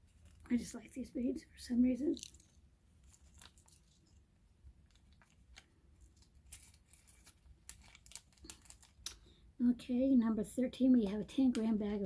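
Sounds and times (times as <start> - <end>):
plastic bags crinkling: 2.0 - 9.3.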